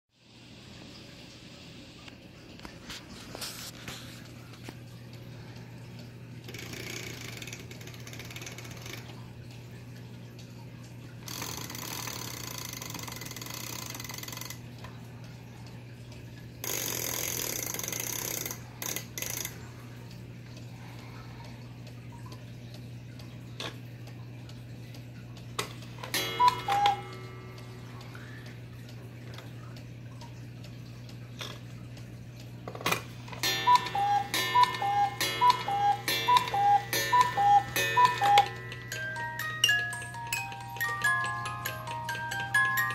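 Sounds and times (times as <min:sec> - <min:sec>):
clock striking the hour: 0:06.4 - 0:09.2, 0:11.3 - 0:14.6, 0:16.6 - 0:19.6, 0:25.6 - 0:29.1, 0:32.9 - 0:42.9
cuckoo clock calling: 0:06.4 - 0:09.9, 0:11.2 - 0:14.9, 0:16.6 - 0:19.8, 0:25.3 - 0:31.6, 0:32.9 - 0:42.9.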